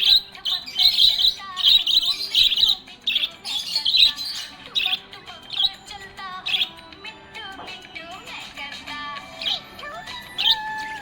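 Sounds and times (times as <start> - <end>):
budgerigar chirping and chattering: 0.0 - 6.8, 9.3 - 11.0.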